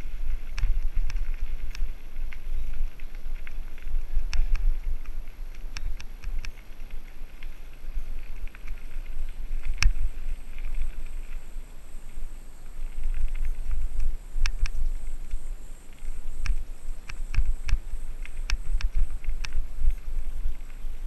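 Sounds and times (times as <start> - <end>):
bike clicks and rattles: 0.0 - 11.5
wind rumbling on microphone: 0.0 - 21.0.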